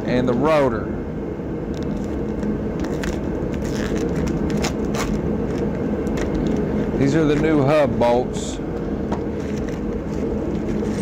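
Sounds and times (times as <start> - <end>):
steady background hum: 0.0 - 11.0
metal parts clicking and scraping: 10.6 - 11.0.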